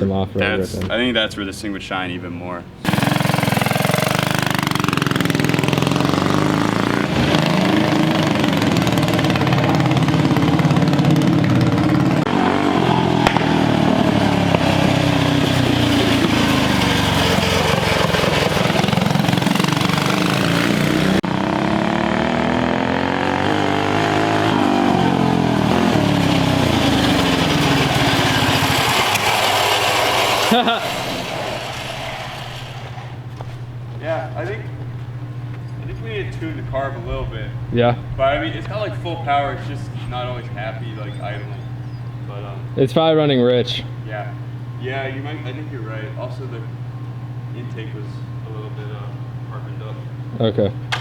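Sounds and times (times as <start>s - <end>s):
mini bike engine revving: 2.8s - 33.8s, 47.7s - 51.0s.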